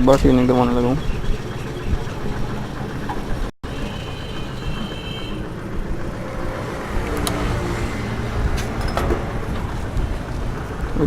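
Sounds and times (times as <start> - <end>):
traffic noise: 0.0 - 11.0.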